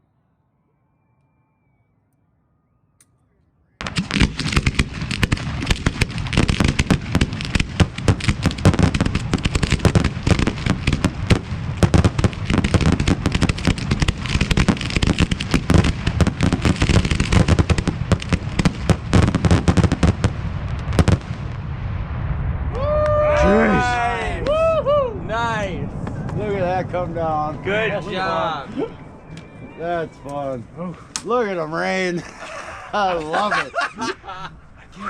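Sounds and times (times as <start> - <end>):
firework shells launching and bursting: 3.8 - 21.8
fireworks crackle: 3.8 - 24.8.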